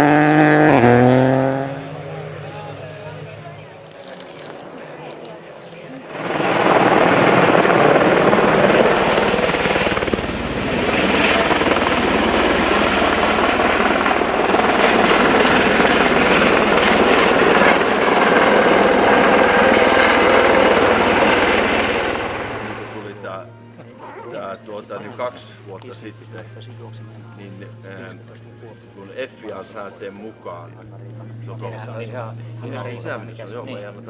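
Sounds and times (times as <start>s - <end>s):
helicopter rotor chopping: 0.0s - 23.4s.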